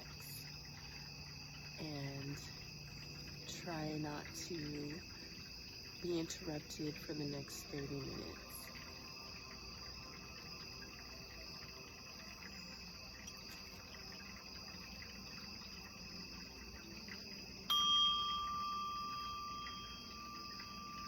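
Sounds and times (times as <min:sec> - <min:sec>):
crickets chirping: 0:00.0 - 0:21.0
bell-like tone ringing: 0:17.7 - 0:21.0.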